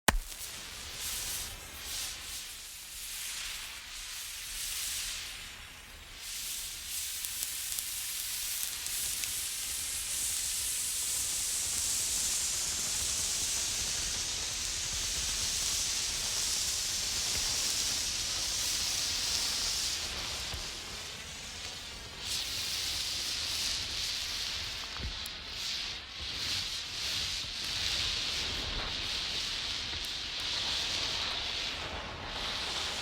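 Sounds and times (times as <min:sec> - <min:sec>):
burning flare hissing: 0:00.1 - 0:33.0.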